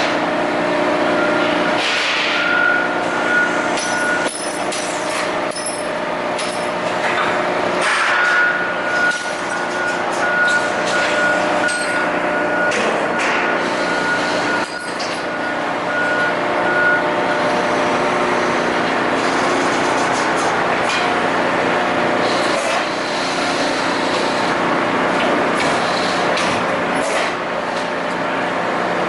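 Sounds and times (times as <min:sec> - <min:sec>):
steady machine hum: 0:00.0 - 0:29.0
sharp machine knocks: 0:01.8 - 0:02.4.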